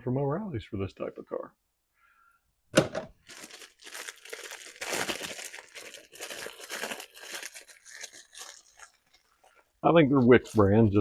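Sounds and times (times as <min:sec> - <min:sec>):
packaging crinkling and rustling: 0:03.2 - 0:11.0.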